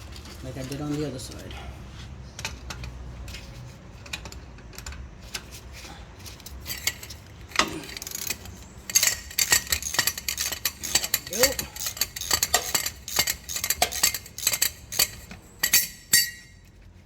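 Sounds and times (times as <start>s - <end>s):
metal tools clicking: 6.6s - 16.7s.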